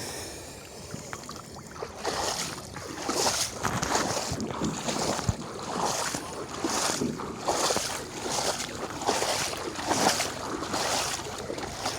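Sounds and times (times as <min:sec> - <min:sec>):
water splashing: 0:00.0 - 0:11.9.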